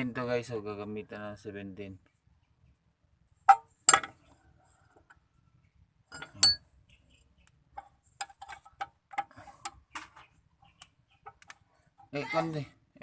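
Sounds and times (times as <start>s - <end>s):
metal wrench clink: 3.5s - 4.1s, 6.1s - 6.6s.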